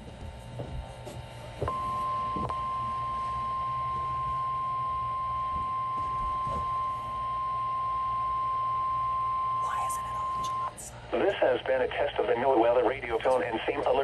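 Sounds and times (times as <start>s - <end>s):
steady alarm beep: 1.6s - 10.8s.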